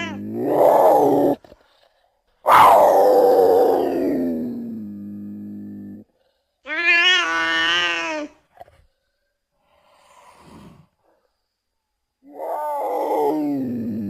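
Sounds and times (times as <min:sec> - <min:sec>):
cat meowing: 0:00.0 - 0:00.3
faint breathy exhale: 0:09.2 - 0:11.3.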